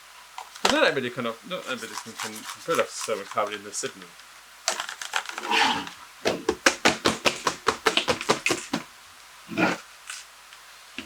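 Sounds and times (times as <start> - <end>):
keyboard tapping: 6.3 - 8.8.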